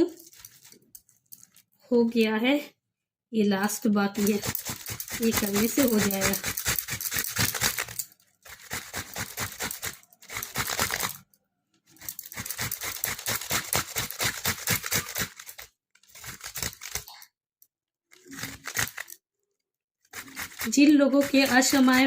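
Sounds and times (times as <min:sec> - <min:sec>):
grater rasping: 0:00.1 - 0:01.6, 0:04.2 - 0:17.1, 0:18.1 - 0:19.2, 0:20.0 - 0:22.0.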